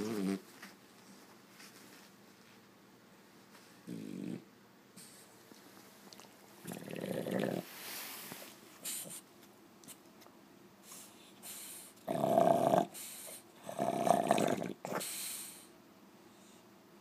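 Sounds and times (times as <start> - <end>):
dog snoring: 0.0 - 0.4, 3.8 - 4.5, 6.6 - 7.7, 12.0 - 15.1.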